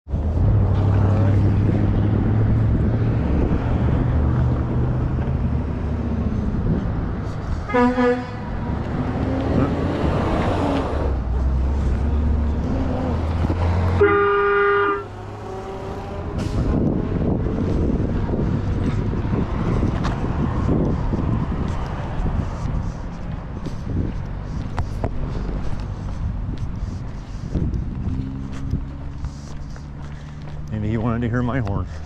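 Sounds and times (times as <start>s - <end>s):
vehicle horn double toot: 7.6s - 8.5s, 14.0s - 15.2s
air train horn chord: 7.7s - 8.5s, 14.0s - 15.1s.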